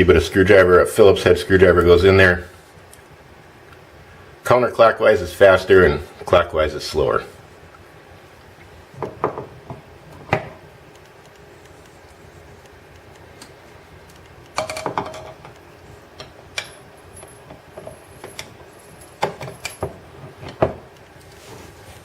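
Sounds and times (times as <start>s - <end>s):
metal clicks and clinks: 16.2s - 20.0s
metal clatter with ring: 16.6s - 20.0s.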